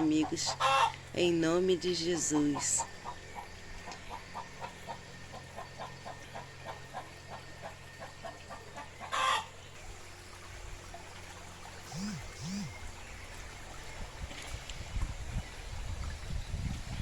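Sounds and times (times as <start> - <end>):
chickens clucking: 0.0 - 1.0, 3.9 - 9.5.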